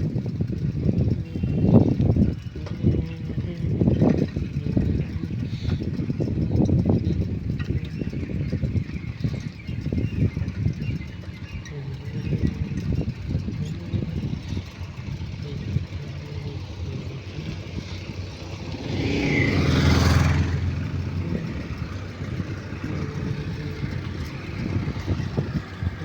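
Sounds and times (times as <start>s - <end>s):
motorcycle riding: 0.0s - 26.0s
wind buffeting microphone: 0.0s - 26.0s
vehicle passing: 12.0s - 26.0s.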